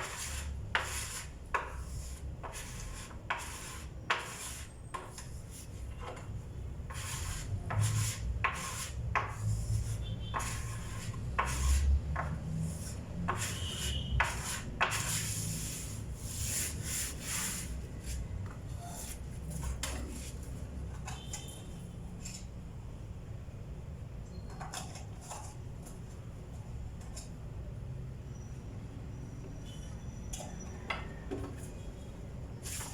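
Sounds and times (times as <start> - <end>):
tool scraping wooden tabletop: 0.0 - 5.2, 6.9 - 17.7.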